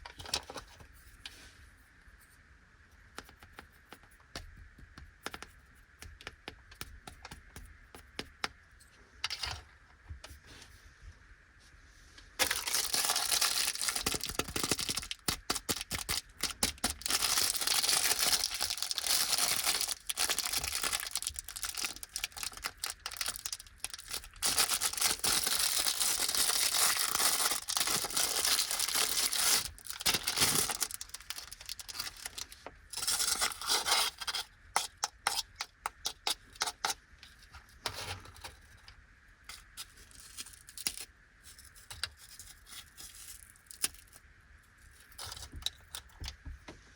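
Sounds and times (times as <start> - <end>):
plastic packaging crinkling and tearing: 12.4 - 34.5.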